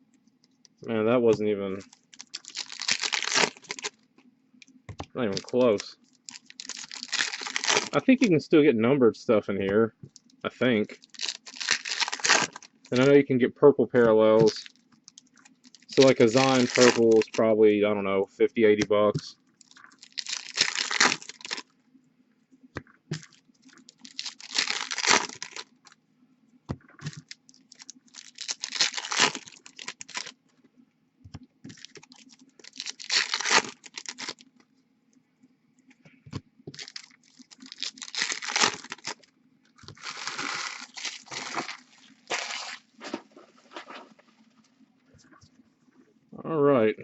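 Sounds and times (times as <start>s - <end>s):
card pack wrappers tearing: 1.3s - 4.0s, 5.2s - 8.1s, 10.8s - 13.2s, 14.3s - 17.4s, 19.6s - 21.6s, 23.2s - 25.7s, 27.0s - 30.4s, 31.7s - 34.4s, 36.7s - 39.2s, 39.9s - 43.2s.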